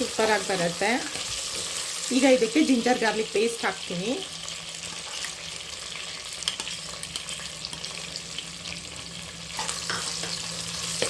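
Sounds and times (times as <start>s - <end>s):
chicken sizzling in oil: 0.0s - 11.0s.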